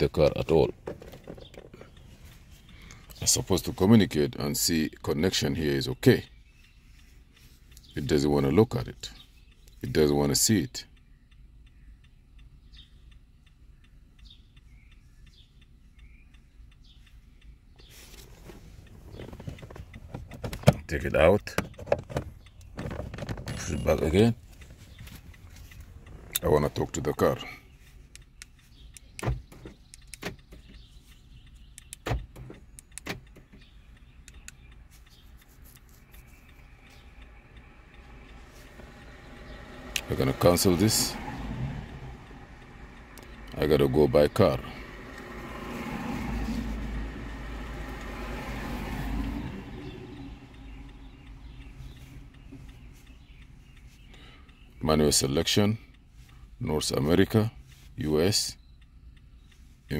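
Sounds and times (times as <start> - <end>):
light clicks and knocks of handling: 0.0 - 11.8, 14.2 - 45.5
faint regular ticking: 0.0 - 59.9.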